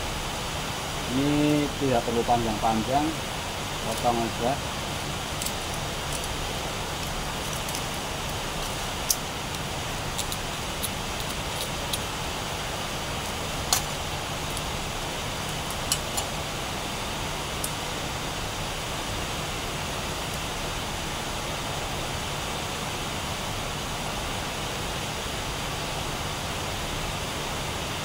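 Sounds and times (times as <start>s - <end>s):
background hiss and hum: 0.0s - 28.0s
electrical cable being cut: 3.8s - 16.4s.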